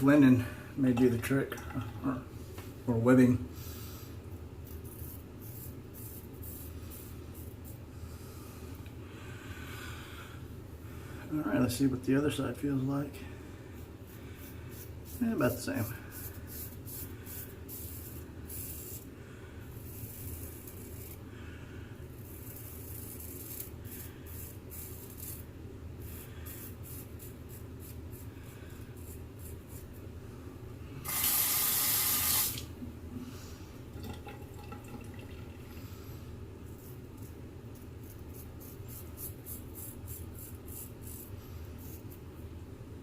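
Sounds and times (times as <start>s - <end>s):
razor scraping over stubble: 19.8s - 21.2s, 22.2s - 30.0s, 36.7s - 42.2s.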